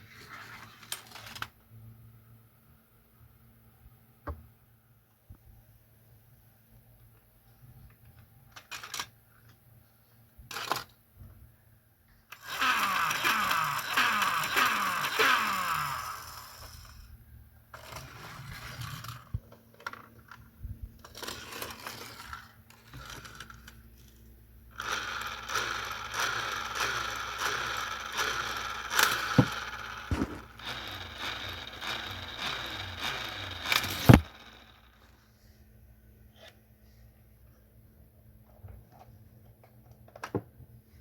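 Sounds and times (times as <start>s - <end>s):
toy car rolling on plastic track: 0.1s - 1.5s, 8.5s - 9.1s, 10.5s - 10.9s, 12.3s - 17.0s, 17.7s - 20.4s, 21.0s - 24.2s, 24.8s - 35.2s.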